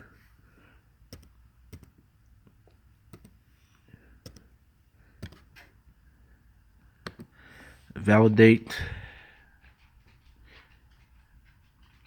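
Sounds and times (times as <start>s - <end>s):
faint computer clicks: 4.2s - 4.5s.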